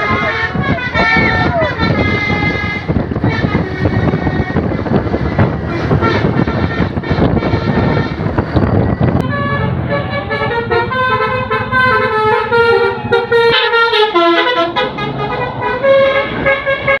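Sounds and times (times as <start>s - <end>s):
bus multi-tone horn melody: 0.0s - 17.0s.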